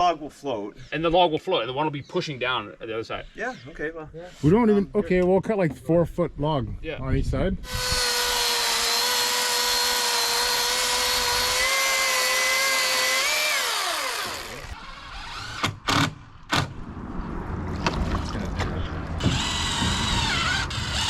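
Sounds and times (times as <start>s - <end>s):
power saw motor: 7.7s - 16.0s, 19.2s - 21.0s.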